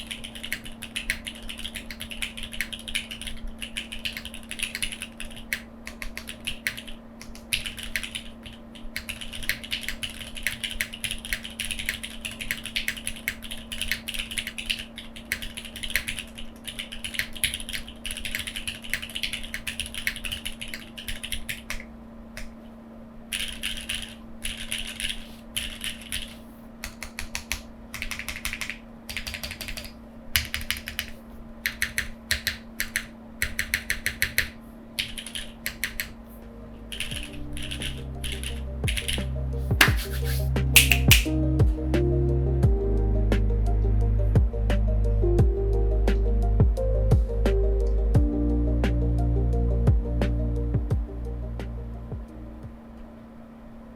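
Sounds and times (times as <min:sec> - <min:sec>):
mechanical keyboard typing: 0:00.0 - 0:21.8, 0:23.3 - 0:36.2, 0:36.9 - 0:41.3
steady low hum: 0:00.0 - 0:53.9.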